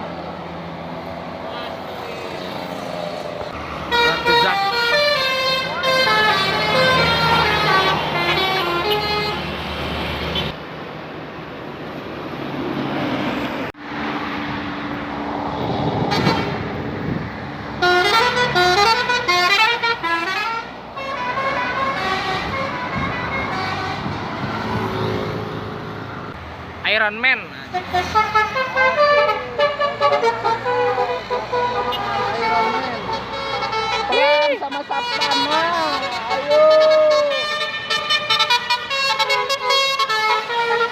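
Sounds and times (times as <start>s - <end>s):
bus engine: 0.0s - 40.9s
traffic noise: 0.0s - 40.9s
musical air horns: 3.9s - 9.5s, 16.0s - 16.7s, 17.8s - 24.3s, 27.7s - 40.9s.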